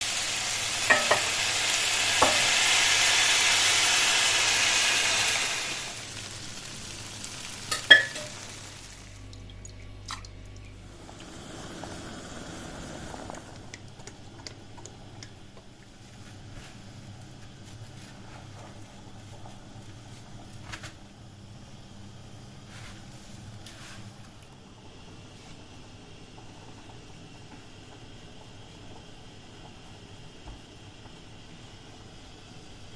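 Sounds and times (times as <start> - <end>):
pastry sizzling in a pan: 0.0 - 9.3.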